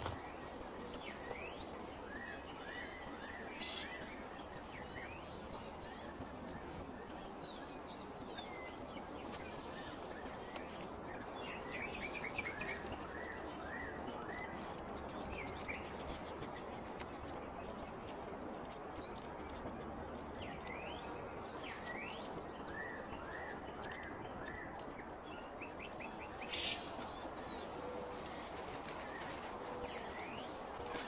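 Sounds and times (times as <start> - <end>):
birds chirping: 0.0 - 17.9, 25.6 - 31.0.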